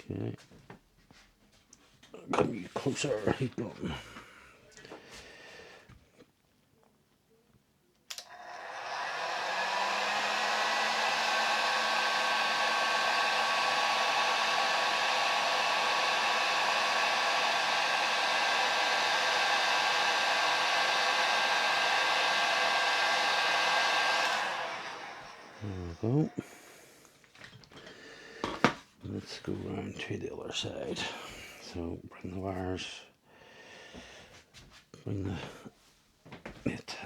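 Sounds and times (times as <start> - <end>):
heat gun switch click: 8.1 - 8.3
heat gun fan blowing: 8.1 - 27.2.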